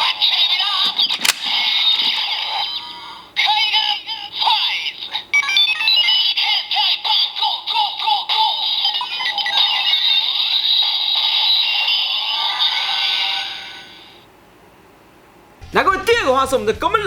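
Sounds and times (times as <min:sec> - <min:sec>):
toy synthesized voice and music: 0:02.2 - 0:14.0.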